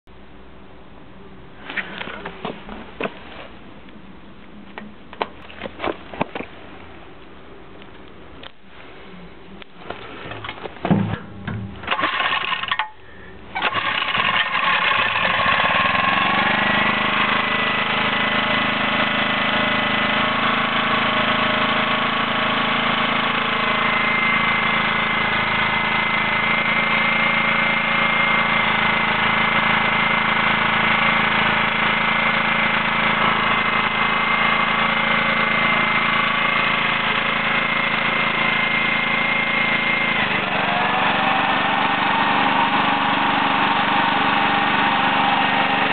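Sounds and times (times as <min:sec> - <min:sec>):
generator engine running: 0:10.5 - 0:45.9.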